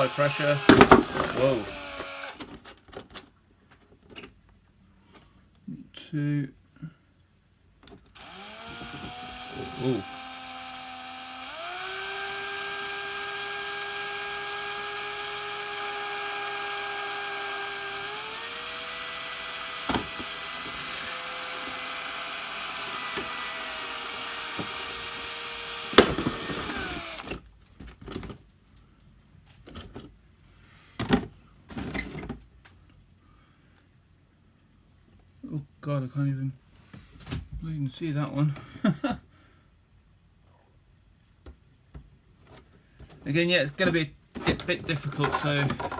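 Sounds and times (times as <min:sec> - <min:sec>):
power drill whining: 0:00.0 - 0:02.5, 0:08.2 - 0:27.4.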